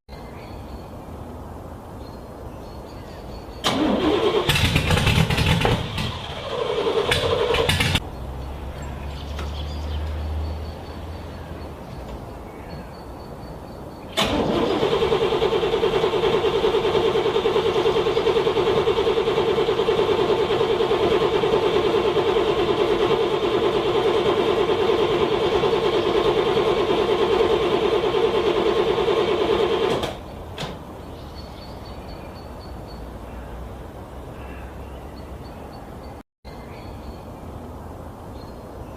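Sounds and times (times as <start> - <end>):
car engine cranking: 3.6 - 8.0, 14.2 - 30.3.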